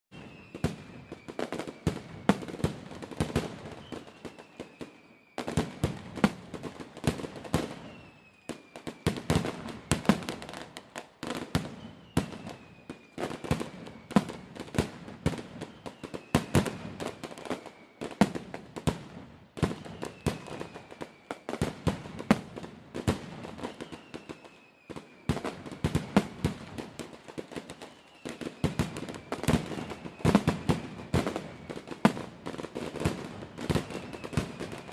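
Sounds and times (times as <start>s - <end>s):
faint falling whistle: 0.1s - 2.7s, 3.5s - 6.0s, 7.6s - 10.5s, 11.5s - 14.6s, 15.3s - 18.2s, 19.6s - 21.6s, 23.6s - 26.6s, 27.6s - 32.2s, 32.9s - 34.9s
firework cracks and bangs: 0.2s - 34.9s.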